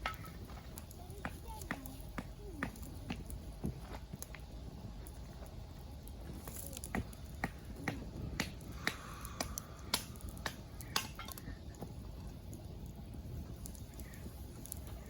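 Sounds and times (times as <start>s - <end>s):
fire crackling with sharp pops: 0.0s - 15.0s
low rushing fire noise: 0.0s - 15.0s.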